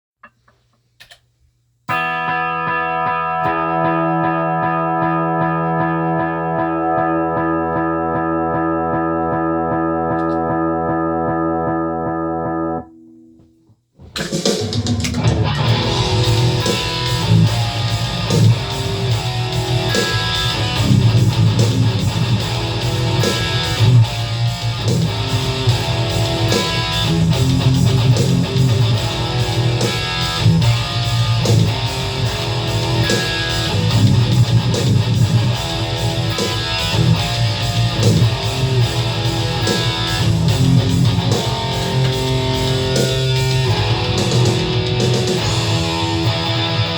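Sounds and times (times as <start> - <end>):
distorted electric guitar riffs: 1.9 - 46.9
drum machine beat: 14.0 - 46.9.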